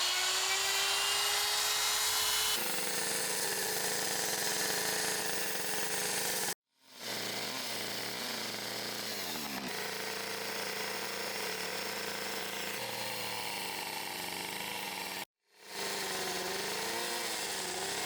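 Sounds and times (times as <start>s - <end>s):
chainsaw cutting wood: 0.0s - 18.0s.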